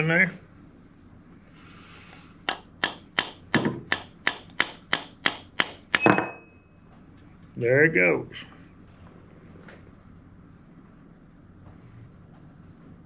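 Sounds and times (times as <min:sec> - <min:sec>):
brief metallic ring: 0:06.0 - 0:06.8.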